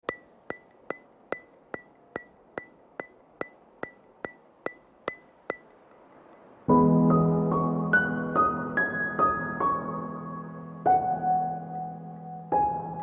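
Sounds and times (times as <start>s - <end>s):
sharp ringing ticks: 0.0s - 6.6s.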